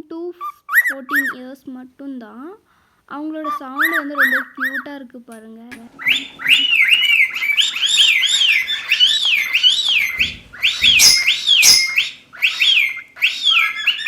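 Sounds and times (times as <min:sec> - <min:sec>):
cockatiel whistling: 0:00.4 - 0:01.4, 0:03.4 - 0:04.9, 0:05.9 - 0:14.0
soft knocks: 0:09.2 - 0:12.0.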